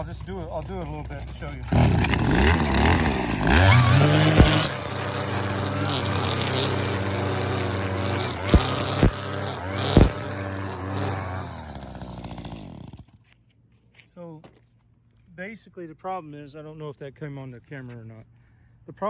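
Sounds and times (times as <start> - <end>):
string trimmer engine revving: 0.0 - 13.2
trimmer line striking dirt: 0.0 - 13.3.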